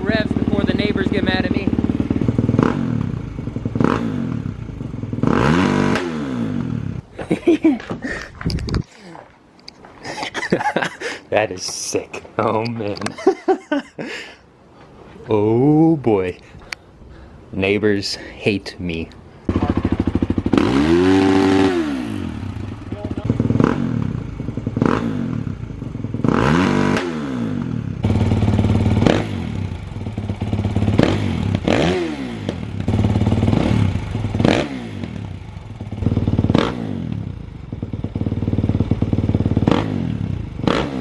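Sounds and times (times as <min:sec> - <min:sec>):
dirt bike engine revving: 0:00.0 - 0:07.0, 0:19.5 - 0:41.0.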